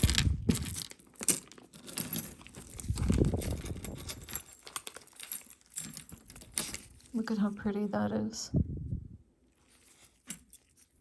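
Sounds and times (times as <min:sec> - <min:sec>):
earrings clinking together: 0:00.0 - 0:07.1.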